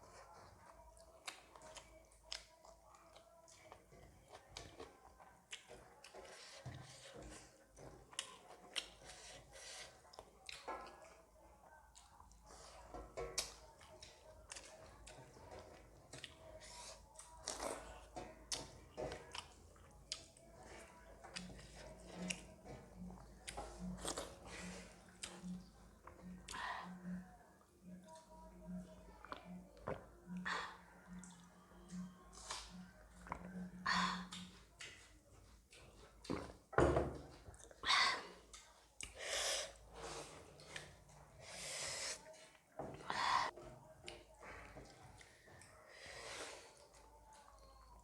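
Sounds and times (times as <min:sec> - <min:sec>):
chewing and lip smacks: 0:00.0 - 0:07.2, 0:07.8 - 0:26.6.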